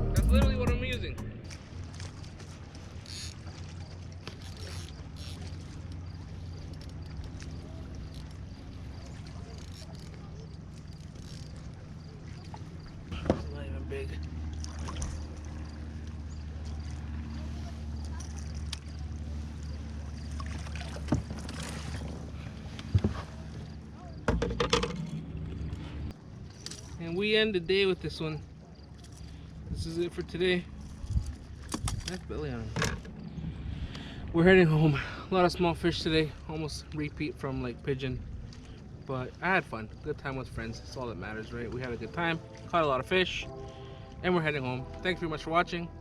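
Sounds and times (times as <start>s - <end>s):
steady low rumble: 0.0s - 2.7s, 33.0s - 46.0s
water splashes: 0.6s - 23.8s, 35.2s - 45.9s.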